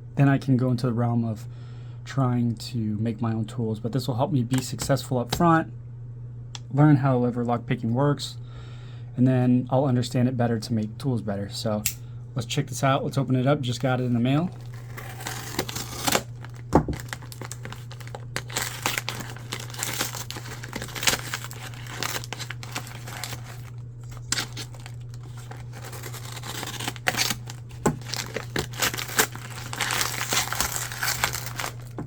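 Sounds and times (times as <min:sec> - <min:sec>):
package crinkling and tearing: 0:14.4 - 0:32.0.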